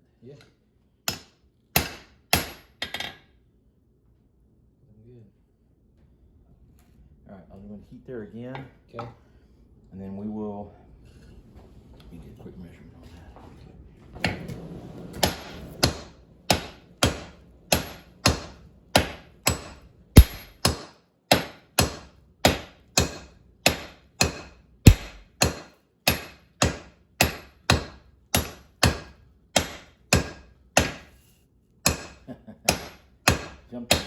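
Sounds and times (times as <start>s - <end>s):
hammer striking steel on anvil: 1.1s - 3.2s, 15.2s - 31.1s, 31.9s - 34.0s.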